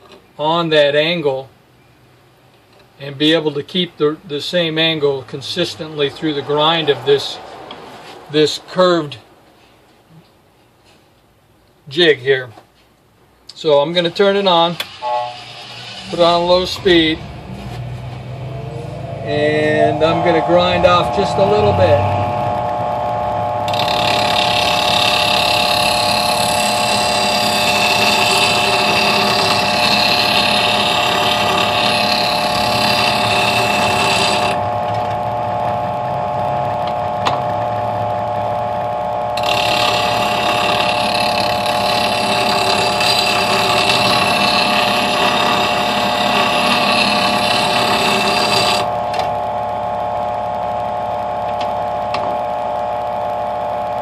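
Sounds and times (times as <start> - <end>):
bench grinder motor whine: 14.2 - 54.0
steel grinding hiss: 14.6 - 17.1.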